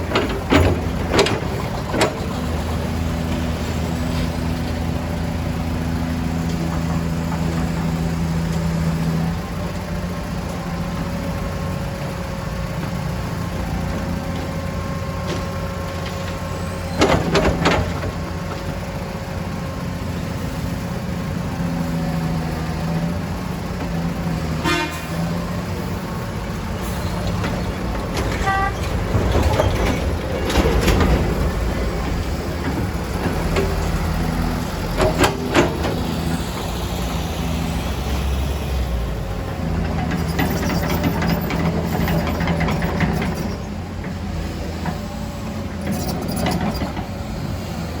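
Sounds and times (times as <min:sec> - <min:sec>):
heavy vehicle engine running: 0:00.0 - 0:48.0
vehicle horn toots: 0:24.6 - 0:25.3, 0:28.4 - 0:28.9.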